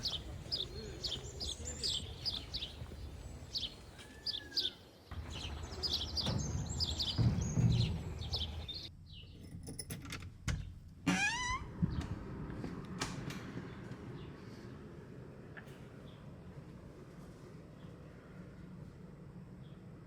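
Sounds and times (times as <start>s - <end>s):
small birds chirping: 0.0s - 9.5s.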